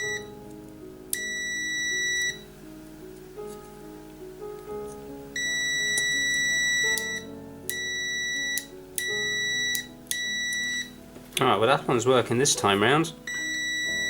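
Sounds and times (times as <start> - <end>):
multimeter buzzer beeping: 0.0 - 0.4, 1.1 - 2.5, 5.4 - 11.0, 13.3 - 14.0
background music: 0.0 - 14.0.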